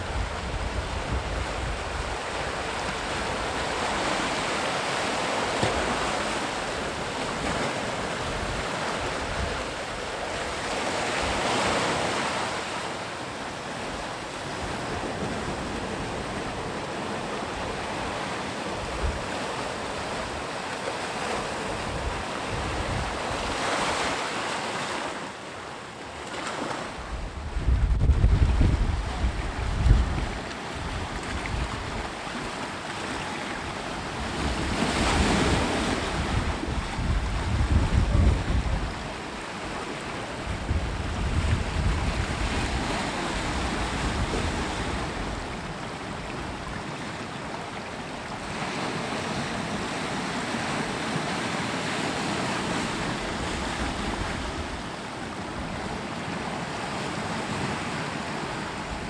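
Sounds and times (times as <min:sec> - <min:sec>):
wind buffeting microphone: 0:00.0 - 0:04.2, 0:27.0 - 0:32.3, 0:33.7 - 0:46.8
sea waves breaking on shore: 0:00.0 - 0:59.0.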